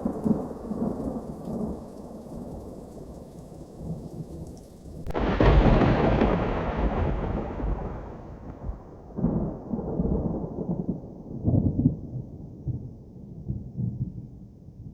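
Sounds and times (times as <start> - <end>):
rain hiss: 0.0 - 8.4
thunder rumbling: 0.0 - 14.9.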